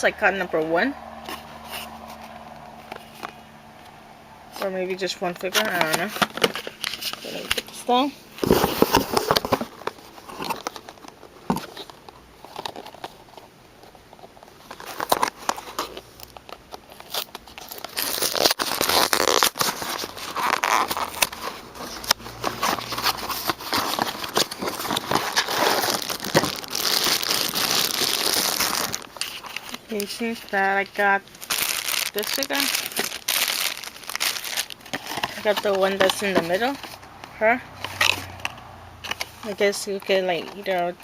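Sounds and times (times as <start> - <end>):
packaging crinkling and tearing: 5.4 - 37.0.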